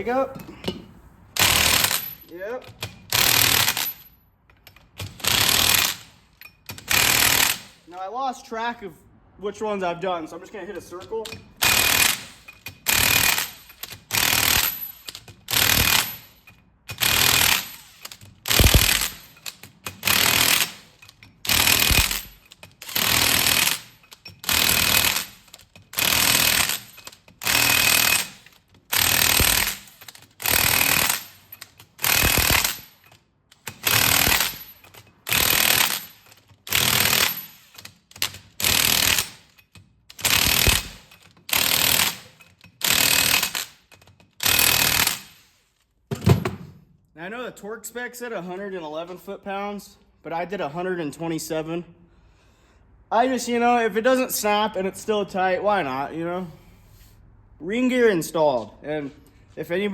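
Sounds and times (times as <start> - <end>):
impact wrench hammering bolts: 0.1 - 7.9, 10.8 - 46.8.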